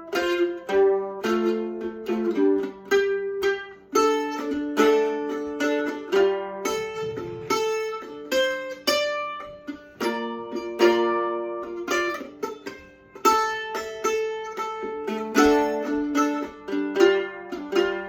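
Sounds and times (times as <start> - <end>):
solo banjo playing: 0.0 - 18.0.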